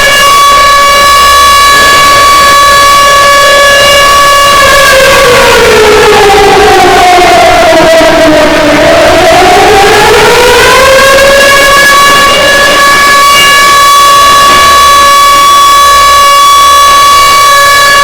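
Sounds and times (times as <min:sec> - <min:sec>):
civil defense siren wailing: 0:00.0 - 0:18.0.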